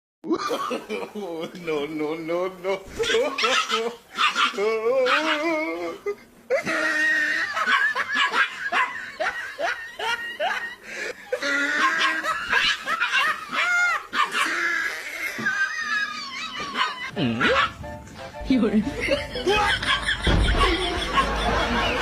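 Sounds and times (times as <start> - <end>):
person laughing hard: 5.2 - 17.7, 19.0 - 22.0.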